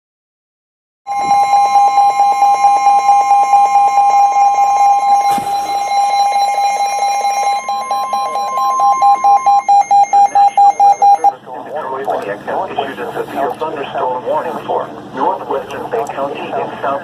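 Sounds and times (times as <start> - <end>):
electronic alarm beeping rapidly: 1.1 - 11.3
steady alarm tone: 1.1 - 11.3.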